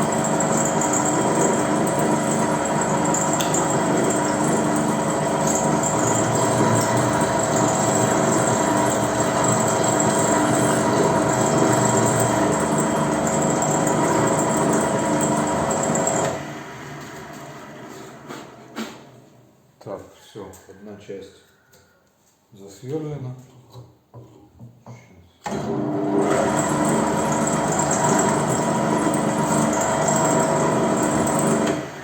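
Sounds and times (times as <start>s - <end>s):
electric drill boring into metal: 0.0s - 16.4s, 25.5s - 32.0s.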